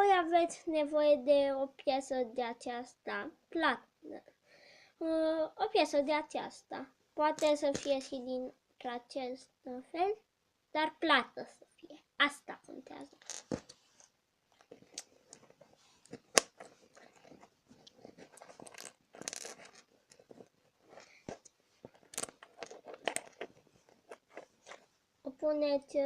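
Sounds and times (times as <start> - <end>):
rustling: 13.0 - 25.2
plastic bricks clicking: 22.0 - 23.5.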